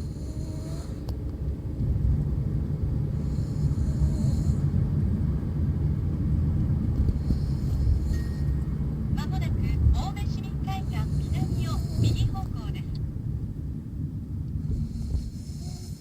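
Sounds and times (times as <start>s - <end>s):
person snoring: 0.0s - 1.0s, 14.8s - 16.0s
steady low rumble: 0.0s - 16.0s.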